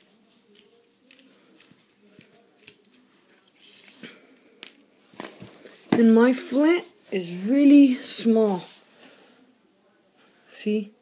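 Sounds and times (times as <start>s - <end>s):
screwdriver clicks and scrapes on metal: 0.5s - 4.0s.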